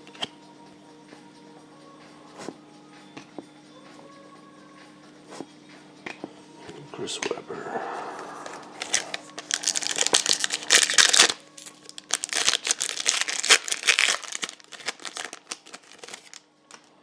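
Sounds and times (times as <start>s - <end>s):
wrapper crinkling and tearing: 8.4s - 16.9s.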